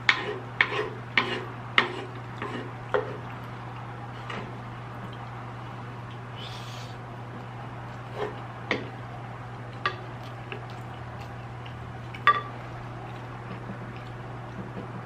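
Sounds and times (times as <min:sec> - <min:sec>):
steady low hum: 0:00.0 - 0:15.0
cutlery clinking against a dish: 0:12.2 - 0:12.5.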